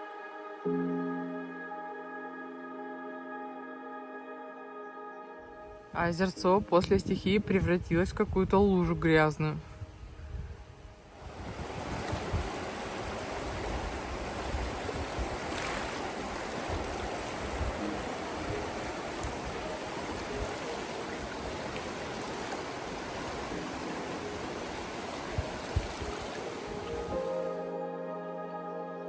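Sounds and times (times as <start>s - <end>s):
rushing water: 11.1s - 27.8s.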